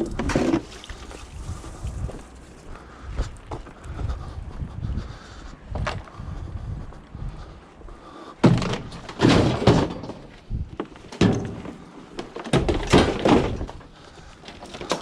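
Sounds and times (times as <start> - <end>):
scrap thrown into a van: 8.4 - 10.3.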